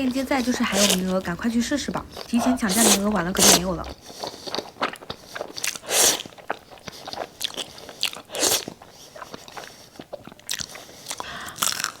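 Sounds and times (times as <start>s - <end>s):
person chewing noodles: 0.0s - 12.0s.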